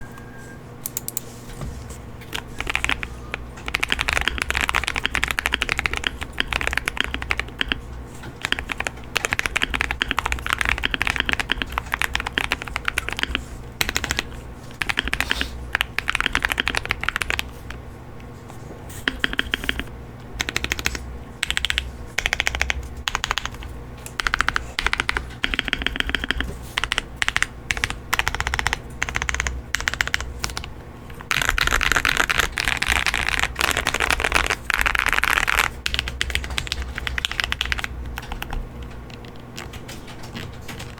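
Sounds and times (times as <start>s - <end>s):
mechanical keyboard typing: 0.8s - 1.2s, 2.2s - 17.8s, 18.9s - 40.9s.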